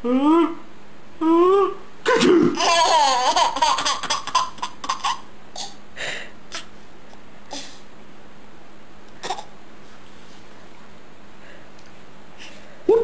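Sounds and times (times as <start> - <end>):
baby laughing: 2.1 - 5.8.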